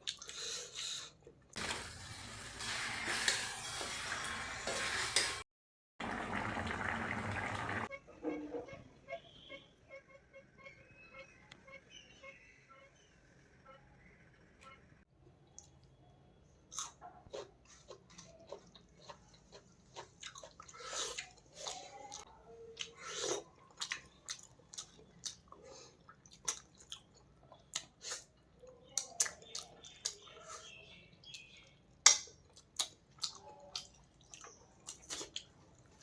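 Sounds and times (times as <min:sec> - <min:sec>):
person chewing food: 0:16.7 - 0:30.6, 0:31.3 - 0:36.0.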